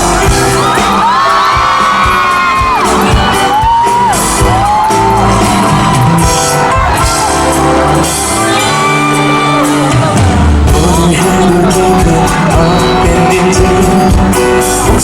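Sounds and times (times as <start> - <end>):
audience shouting: 0.0 - 10.7
live band playing ballad: 0.0 - 15.0.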